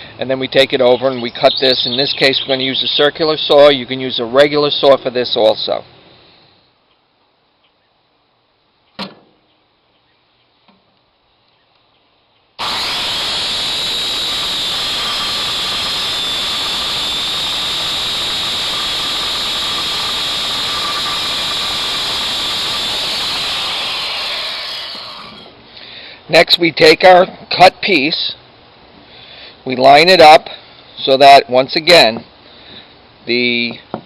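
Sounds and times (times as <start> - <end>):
circular saw cutting: 12.6 - 25.6.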